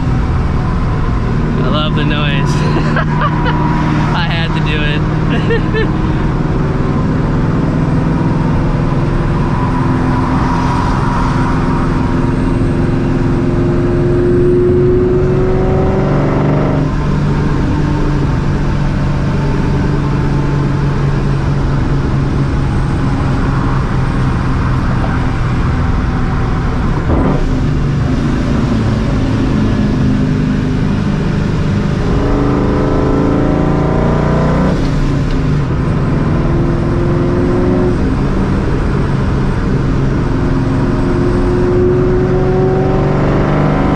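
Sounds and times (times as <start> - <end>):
car engine accelerating: 0.0 - 43.9.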